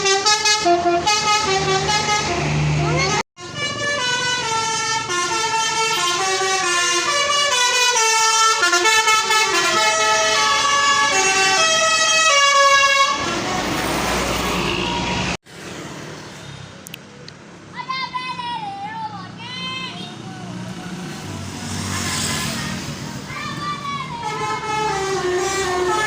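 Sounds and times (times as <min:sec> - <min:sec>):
bus horn playing a melody: 0:00.0 - 0:15.1, 0:24.1 - 0:26.0.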